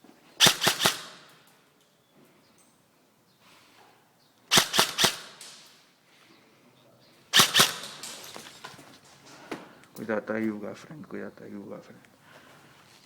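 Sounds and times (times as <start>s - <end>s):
airsoft gun shots popping: 0.4s - 1.3s, 4.5s - 5.6s, 7.4s - 8.1s.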